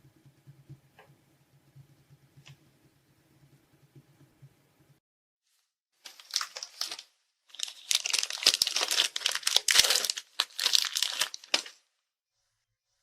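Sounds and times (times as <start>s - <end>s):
food packaging crinkling and tearing: 6.0s - 11.8s.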